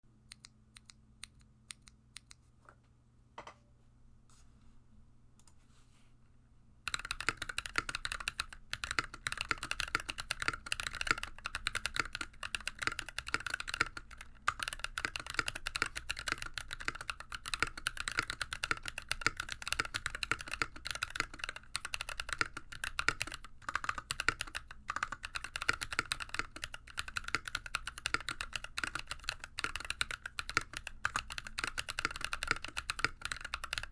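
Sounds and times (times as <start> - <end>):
mechanical keyboard typing: 6.9 - 33.9.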